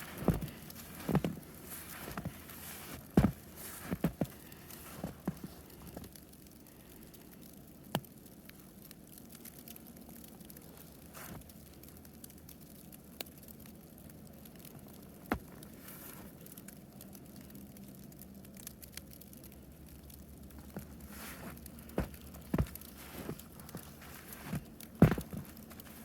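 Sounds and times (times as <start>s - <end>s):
footsteps crunching in snow: 0.0s - 6.1s, 15.3s - 16.3s, 20.6s - 26.0s.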